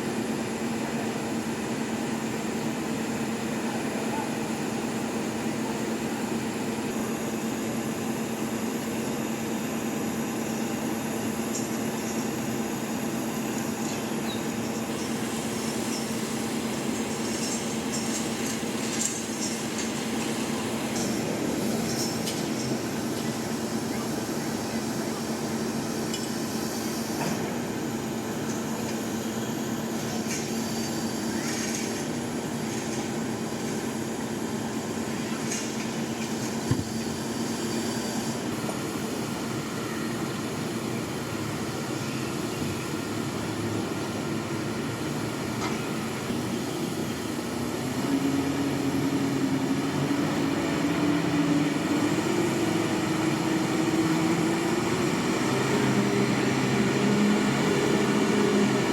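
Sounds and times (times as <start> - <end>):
diesel engine droning and revving: 47.2 - 58.9.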